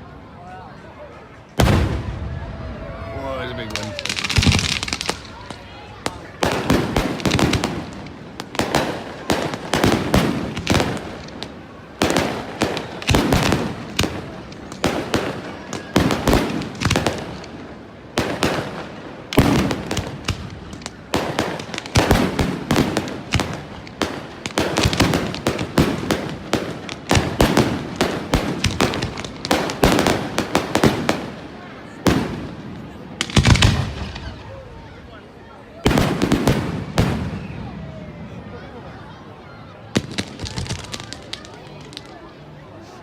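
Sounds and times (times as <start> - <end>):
fireworks shells bursting: 3.7 - 5.4.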